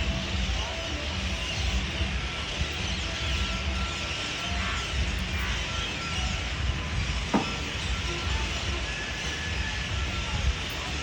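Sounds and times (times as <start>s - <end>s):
flock of parrots chattering: 2.6s - 6.5s.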